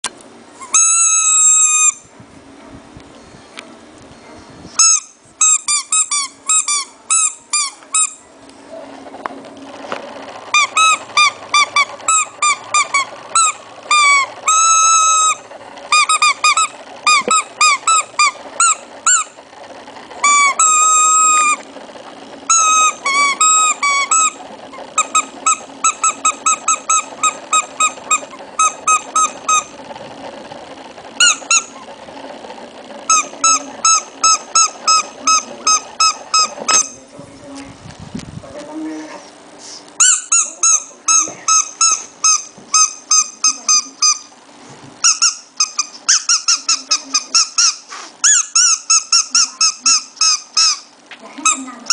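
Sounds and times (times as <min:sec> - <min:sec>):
puppy squeaky cries: 0:00.6 - 0:02.0, 0:04.8 - 0:08.2, 0:10.5 - 0:19.4, 0:20.2 - 0:21.6, 0:22.5 - 0:29.7, 0:33.1 - 0:37.0, 0:45.0 - 0:51.9.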